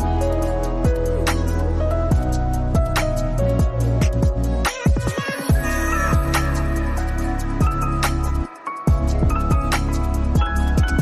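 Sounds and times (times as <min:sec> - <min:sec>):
deep held bass: 0:00.0 - 0:04.7, 0:05.5 - 0:11.0
booming kick drums: 0:03.6 - 0:06.4, 0:08.9 - 0:09.8.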